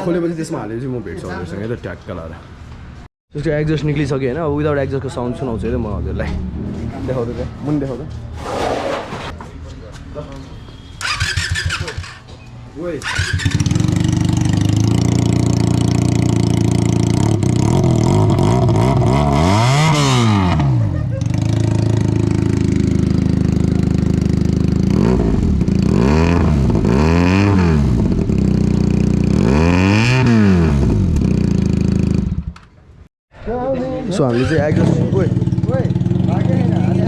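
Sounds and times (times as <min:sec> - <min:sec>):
engine throttle blips: 0:10.6 - 0:12.4
motorcycle engine idling loud: 0:34.8 - 0:37.0.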